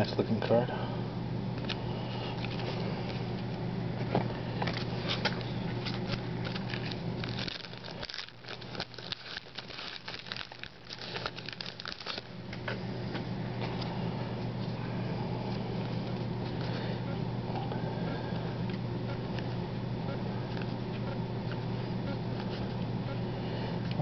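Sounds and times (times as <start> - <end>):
low steady hum: 0.0 - 24.0
cards being handled: 4.7 - 12.2
wrapper crinkling and tearing: 5.9 - 12.3.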